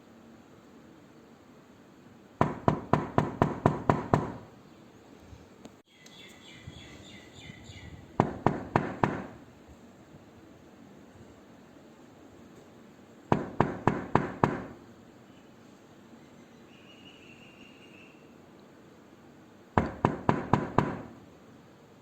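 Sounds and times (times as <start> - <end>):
faint background hiss: 0.0 - 22.0
knocking on a door: 2.4 - 4.5, 8.2 - 9.4, 13.3 - 14.8, 19.8 - 21.2.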